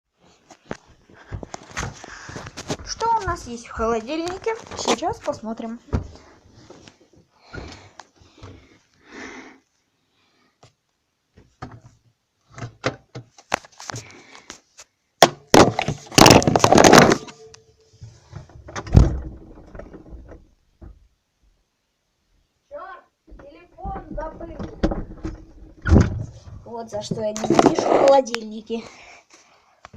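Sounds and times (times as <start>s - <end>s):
household knocks and clicks: 15.2s - 17.5s, 23.3s - 28.0s
clatter of objects: 15.5s - 20.5s, 23.3s - 28.4s.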